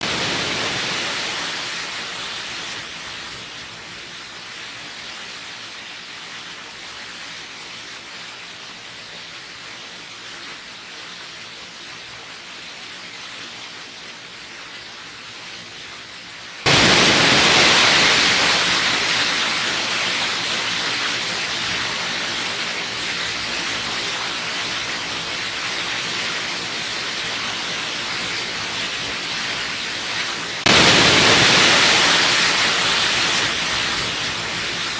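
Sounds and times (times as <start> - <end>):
waterfall rushing: 0.0 - 3.1, 16.7 - 34.9.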